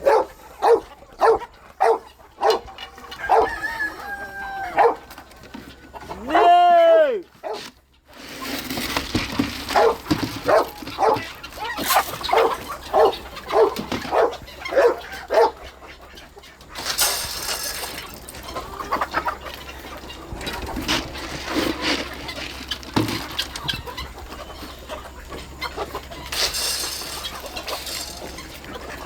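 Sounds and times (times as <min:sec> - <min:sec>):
dog barking: 0:00.0 - 0:03.6, 0:04.7 - 0:05.1, 0:07.4 - 0:07.7, 0:09.8 - 0:11.3, 0:12.3 - 0:15.6
rustling: 0:25.9 - 0:29.0.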